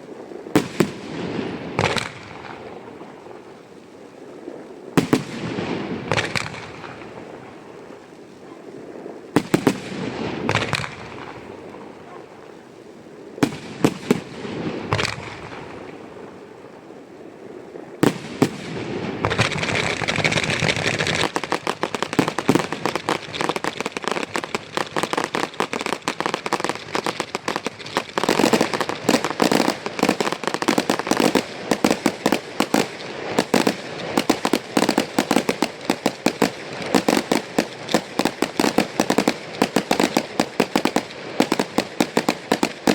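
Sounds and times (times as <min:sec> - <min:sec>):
fireworks crackling: 0:00.0 - 0:42.9
firework shells bursting: 0:18.0 - 0:42.9.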